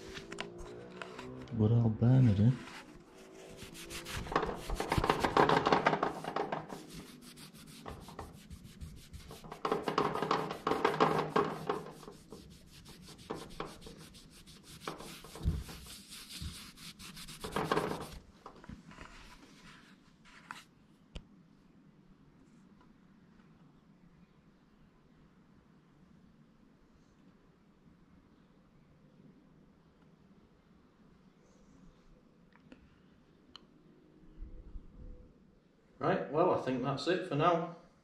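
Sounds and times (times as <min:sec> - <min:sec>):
rubbing and scraping: 0:02.1 - 0:20.6.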